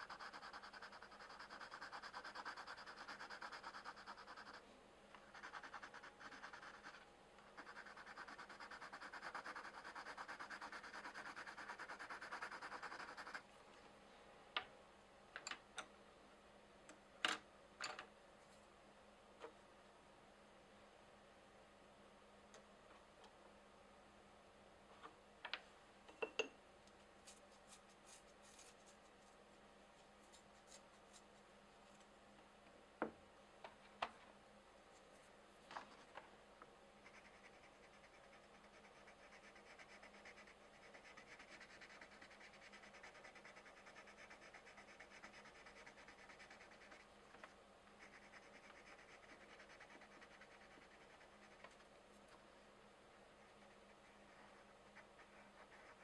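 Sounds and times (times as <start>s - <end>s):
pencil scratching on paper: 0.0s - 4.6s, 5.2s - 13.4s, 37.0s - 52.4s, 53.4s - 56.0s.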